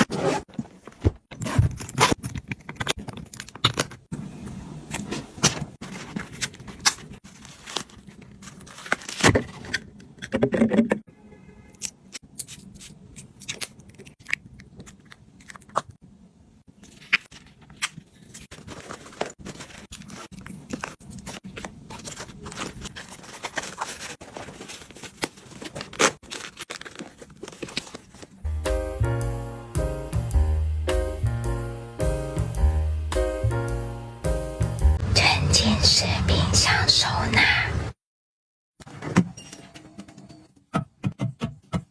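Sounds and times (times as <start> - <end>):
items clicking and tapping: 16.8 - 28.4.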